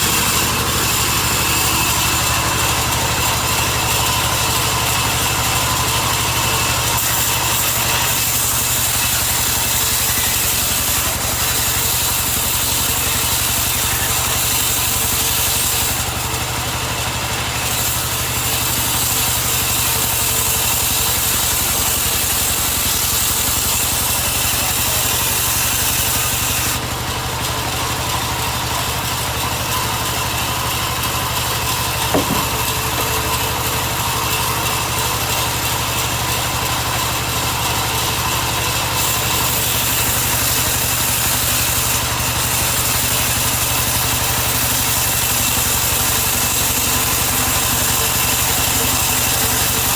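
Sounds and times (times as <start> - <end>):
engine running with hissy tone: 0.0 - 49.9
short knock: 32.1 - 32.8.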